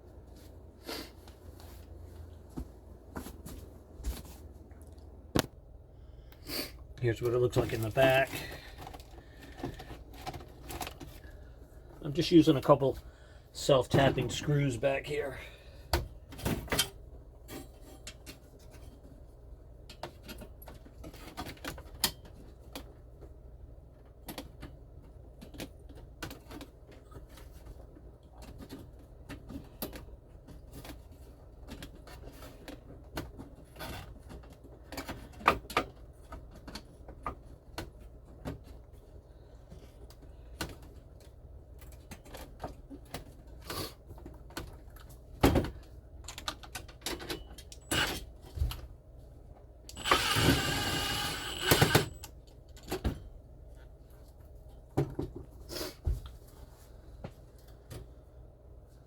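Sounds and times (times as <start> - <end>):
low steady hum: 0.0 - 21.3.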